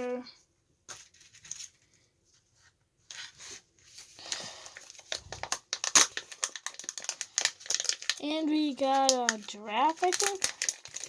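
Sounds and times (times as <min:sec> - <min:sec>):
packaging tearing and crinkling: 0:04.8 - 0:11.0.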